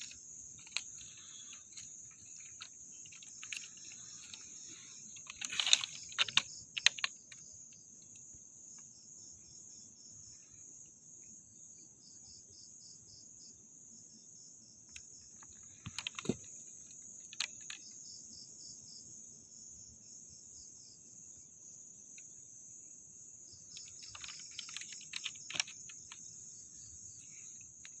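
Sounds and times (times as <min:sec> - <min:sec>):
night insects chirring: 0:00.0 - 0:28.0
sharp clicks and knocks: 0:14.9 - 0:16.5, 0:23.8 - 0:26.2.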